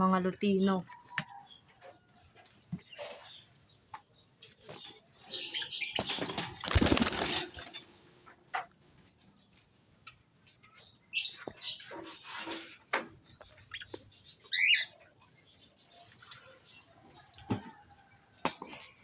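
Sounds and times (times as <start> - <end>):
cockatiels flapping wings: 6.5 - 7.8.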